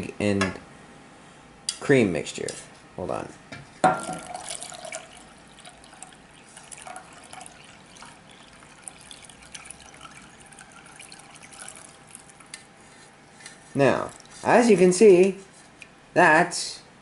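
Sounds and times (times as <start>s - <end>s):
milk pouring into a bowl: 4.0s - 12.6s, 13.7s - 14.5s.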